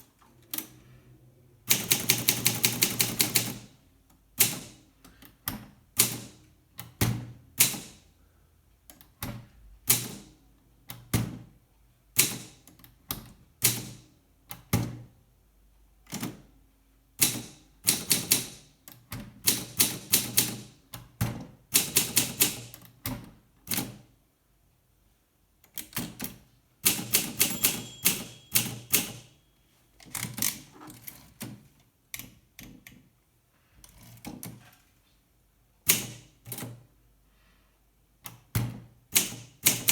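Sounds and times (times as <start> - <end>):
manual typewriter keys striking: 1.7 - 3.7, 21.8 - 22.9, 25.8 - 29.4, 39.1 - 39.9.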